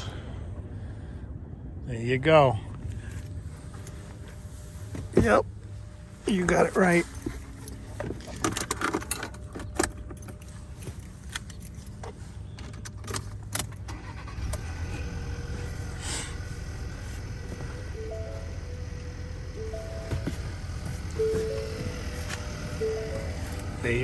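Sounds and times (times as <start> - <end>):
steady low hum: 0.0 - 12.6, 13.3 - 24.0
faint steady tones: 14.4 - 24.0.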